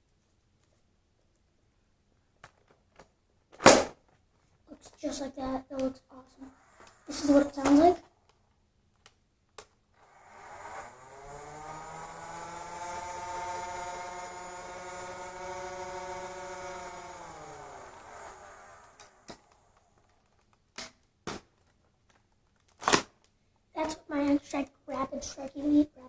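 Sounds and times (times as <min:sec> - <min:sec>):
toy blaster motors whining: 0:06.3 - 0:08.0, 0:10.0 - 0:20.4.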